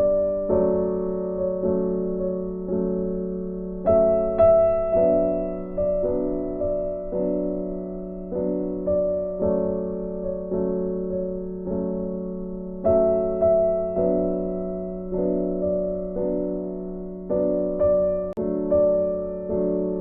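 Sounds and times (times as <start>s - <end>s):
slow piano music: 0.0s - 20.0s.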